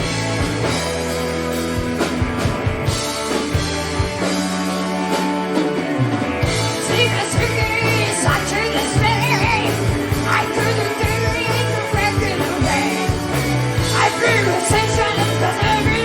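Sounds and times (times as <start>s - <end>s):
live hard rock band: 0.0s - 16.0s
person singing: 6.7s - 16.0s.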